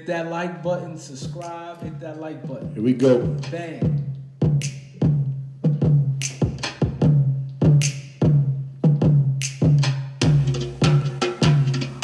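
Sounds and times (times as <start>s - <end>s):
drum machine kicks and snares: 1.2s - 12.0s
booming bass: 10.2s - 12.0s.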